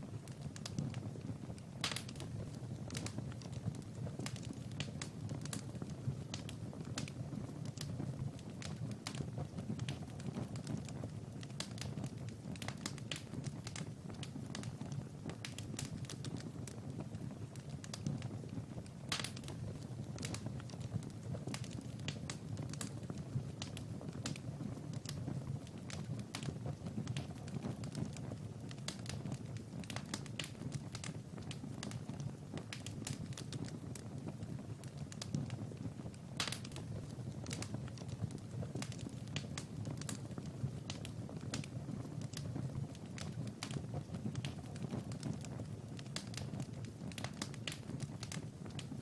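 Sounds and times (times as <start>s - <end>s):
low rumble of flames: 0.0s - 49.0s
wood fire crackling: 0.0s - 49.0s.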